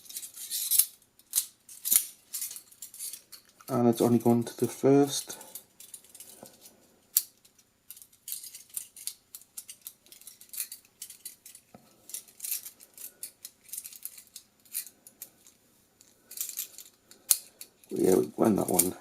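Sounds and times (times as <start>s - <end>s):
toy handcuffs clicking: 0.0s - 3.7s, 7.1s - 15.3s, 16.0s - 19.0s.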